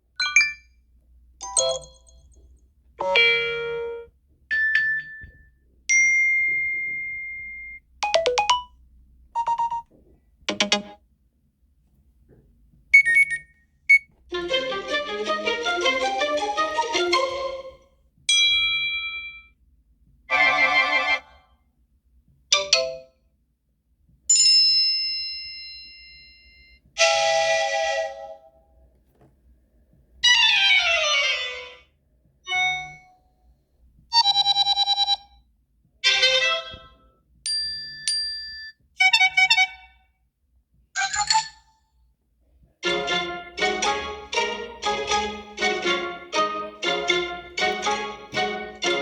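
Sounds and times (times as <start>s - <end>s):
short phone alert tones: 9.4s - 9.9s, 13.0s - 14.1s.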